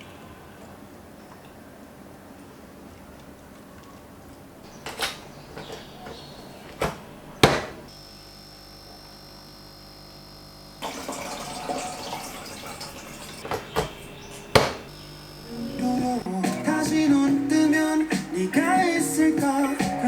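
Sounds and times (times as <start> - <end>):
utensils or dishes knocking: 4.7 - 7.9, 10.8 - 14.9
water running from a tap: 10.8 - 14.9.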